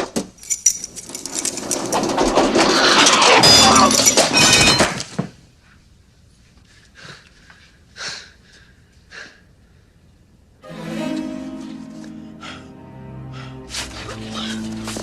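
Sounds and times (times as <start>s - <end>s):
person breathing: 12.2s - 14.6s.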